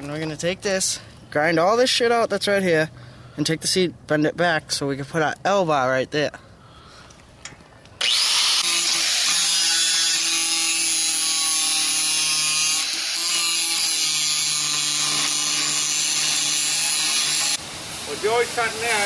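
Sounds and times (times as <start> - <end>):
angle grinder grinding steel: 8.0 - 17.6.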